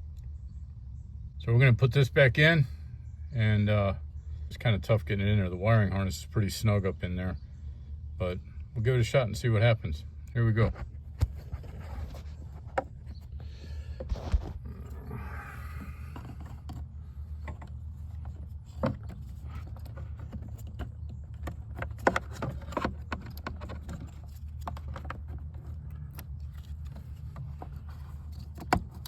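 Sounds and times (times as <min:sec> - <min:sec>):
steady low hum: 0:00.0 - 0:29.0
plastic and wiring clicking: 0:15.8 - 0:29.0.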